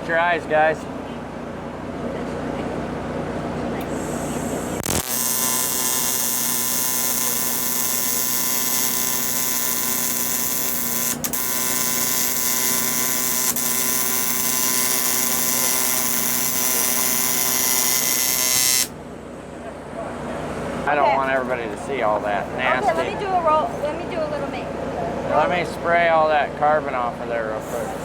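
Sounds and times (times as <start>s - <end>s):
welding arc buzzing hiss: 3.8s - 19.0s, 27.6s - 28.0s.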